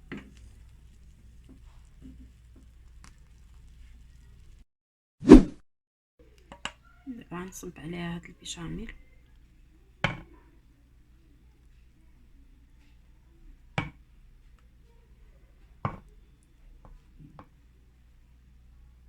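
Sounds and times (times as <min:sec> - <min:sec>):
faint steady hum: 0:00.0 - 0:04.6, 0:06.2 - 0:19.0
sauce pouring: 0:00.0 - 0:04.6
utensil knocking on cookware: 0:10.1 - 0:10.3.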